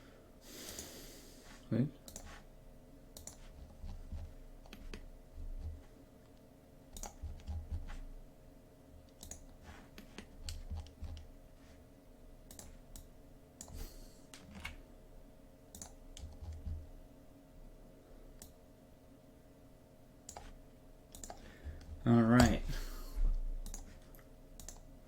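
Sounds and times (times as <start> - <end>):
faint steady hum: 0.0 - 25.0
mouse and keyboard clicking: 2.1 - 2.3, 3.2 - 3.9, 6.9 - 7.8, 9.1 - 11.3, 12.5 - 13.8, 20.3 - 20.5, 21.1 - 22.6, 23.6 - 23.9, 24.6 - 24.9.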